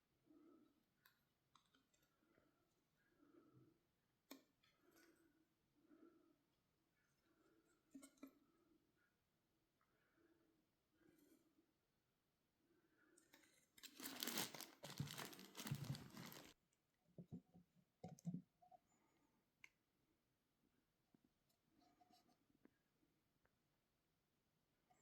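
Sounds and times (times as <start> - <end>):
packaging torn and crumpled: 13.8 - 16.6.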